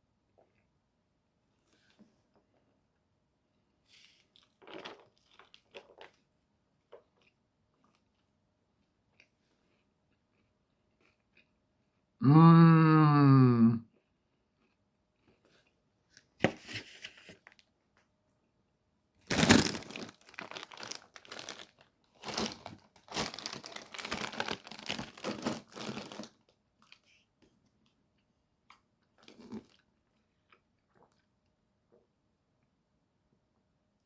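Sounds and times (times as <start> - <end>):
food wrapper crinkling and tearing: 4.4 - 6.1, 19.3 - 27.1.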